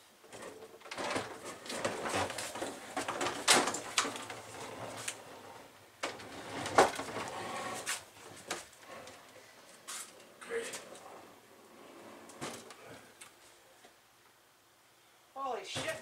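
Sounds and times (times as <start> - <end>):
refrigerator bumping and scraping: 0.3 - 9.1.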